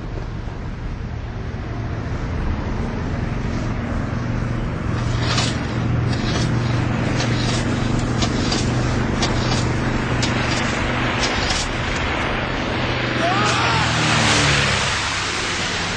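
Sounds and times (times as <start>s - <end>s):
engine hum: 0.0s - 15.9s
sharp clicks and knocks: 5.0s - 12.1s.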